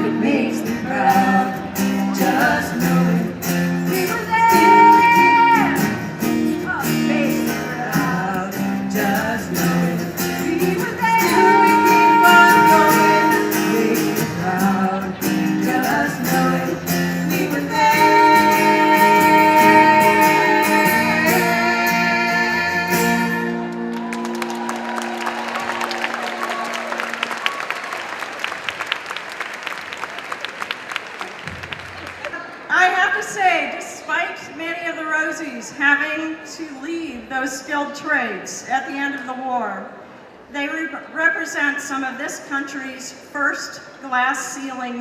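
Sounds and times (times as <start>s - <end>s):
woman singing: 0.0s - 23.7s
strummed acoustic guitar: 0.0s - 23.9s
applause: 23.7s - 32.7s.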